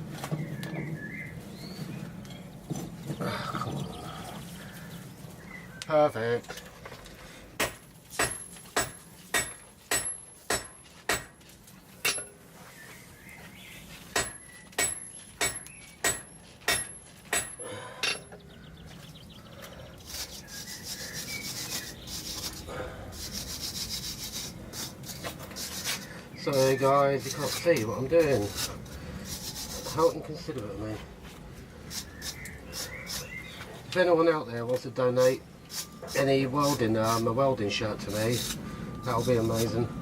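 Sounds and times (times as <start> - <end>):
hammer striking steel on anvil: 7.6 - 11.4, 12.0 - 12.4, 14.2 - 18.3
rasping scrape on steel: 20.0 - 30.2.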